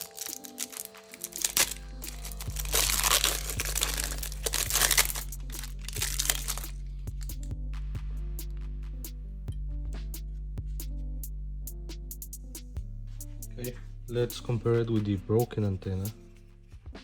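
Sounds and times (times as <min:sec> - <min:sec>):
plastic packaging crinkling: 0:00.0 - 0:06.8
background music with bass: 0:00.0 - 0:17.0.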